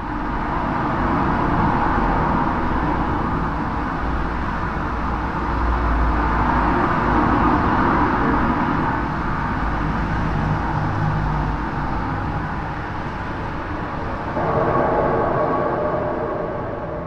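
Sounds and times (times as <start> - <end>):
steel bridge rumbling with ringing hum: 11.8 - 17.0.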